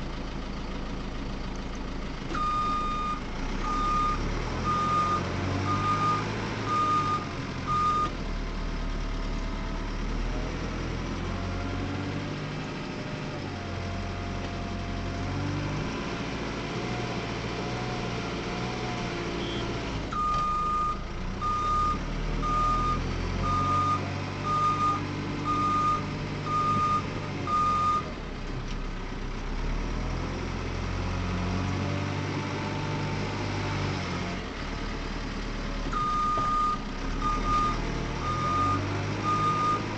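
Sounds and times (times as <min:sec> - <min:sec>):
diesel engine revving: 0:00.0 - 0:39.9
reversing alarm beeping: 0:02.4 - 0:08.1, 0:20.2 - 0:28.1, 0:36.0 - 0:39.9.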